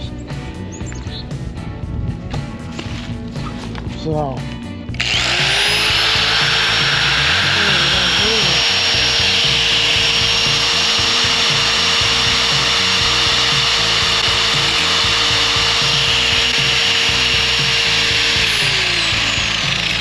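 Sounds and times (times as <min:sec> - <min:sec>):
power tool grinding: 0:04.9 - 0:20.0
power tool spinning down: 0:05.0 - 0:20.0.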